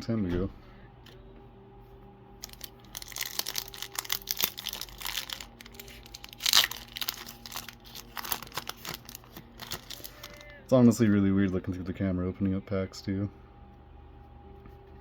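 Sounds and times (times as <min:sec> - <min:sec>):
foil wrapper crinkling: 0:02.4 - 0:10.6
foil wrapper ripping: 0:02.4 - 0:10.6.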